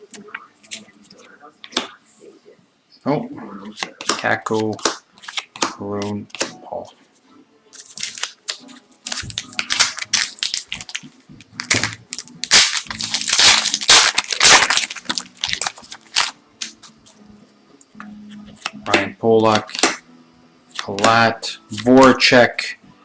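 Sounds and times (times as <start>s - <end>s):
foil wrapper crinkling: 7.8s - 16.9s.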